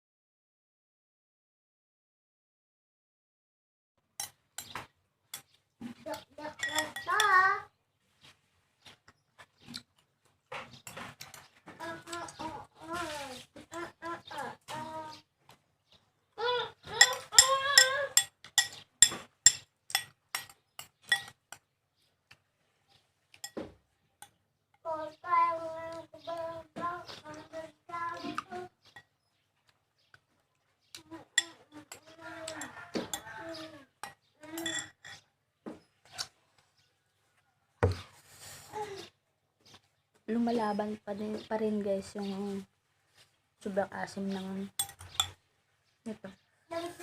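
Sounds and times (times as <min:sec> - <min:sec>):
dish and utensils clinking: 0:06.5 - 0:07.4, 0:16.9 - 0:21.4, 0:23.4 - 0:23.7, 0:31.4 - 0:33.4, 0:34.0 - 0:35.2, 0:44.8 - 0:45.4
mouth clicking while chewing fruit: 0:09.0 - 0:10.1.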